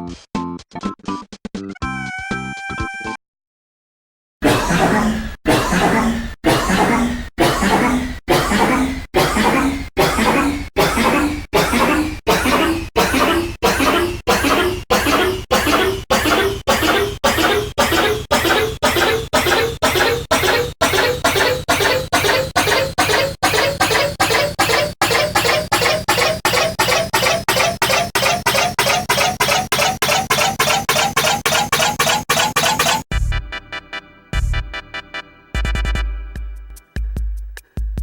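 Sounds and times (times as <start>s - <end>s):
person coughing: 4.4s - 14.6s.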